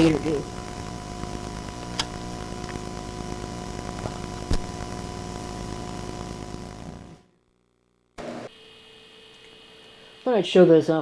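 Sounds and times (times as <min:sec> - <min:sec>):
electronic hum and hiss with tones: 0:00.0 - 0:11.0
sharp clicks: 0:01.6 - 0:02.9.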